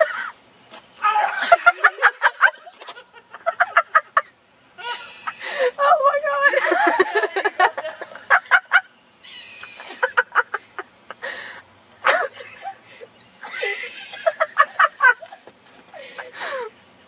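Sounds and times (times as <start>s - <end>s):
person laughing hard: 1.1s - 4.2s, 6.5s - 8.8s, 9.8s - 15.4s.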